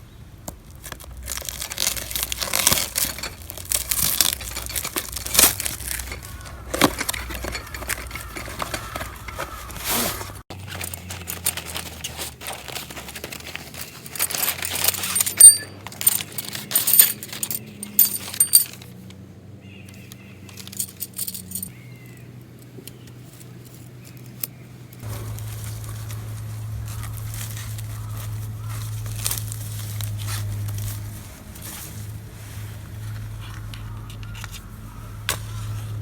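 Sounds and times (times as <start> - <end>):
small metal objects clinking: 1.2 - 9.5, 10.6 - 19.0, 20.0 - 21.7
low steady hum: 22.5 - 36.0.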